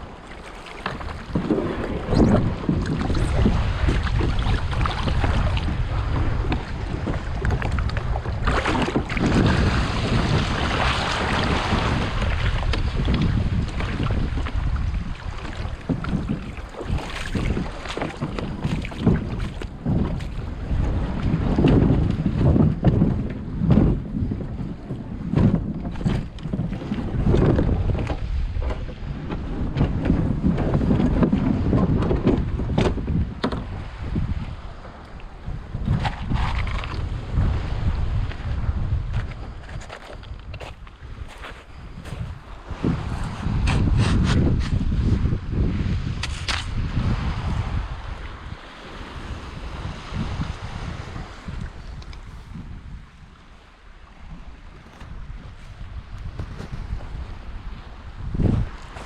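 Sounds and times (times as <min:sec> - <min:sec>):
sea waves washing: 0:00.0 - 0:21.4, 0:46.2 - 0:59.0
water splashing and sloshing: 0:00.0 - 0:45.2, 0:46.0 - 0:59.0
wind rumbling on microphone: 0:00.0 - 0:59.0.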